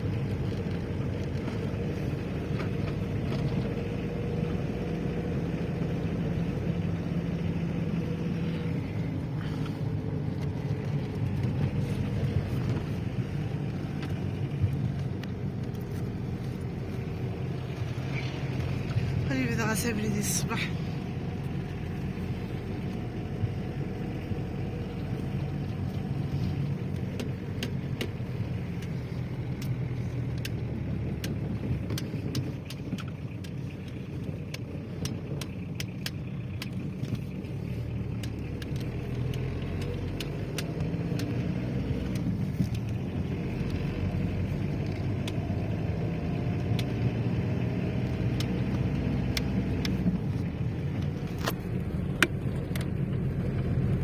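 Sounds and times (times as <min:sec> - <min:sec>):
car engine and road noise: 0:00.0 - 0:54.0
light clicks and rattles: 0:23.6 - 0:54.0.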